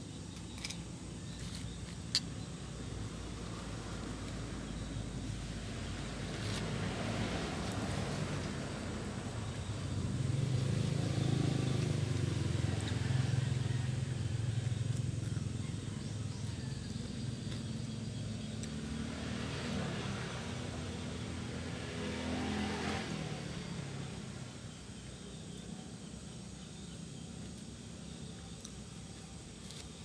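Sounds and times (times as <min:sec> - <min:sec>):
motor vehicle engine running: 0:02.6 - 0:27.4.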